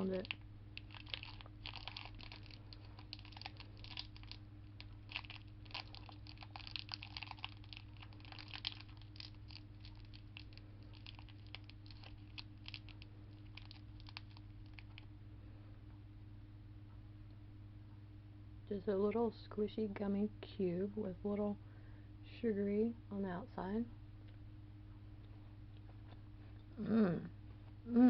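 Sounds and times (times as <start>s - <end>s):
plastic wrapper crinkling: 0.0s - 15.1s
steady low hum: 0.0s - 28.0s.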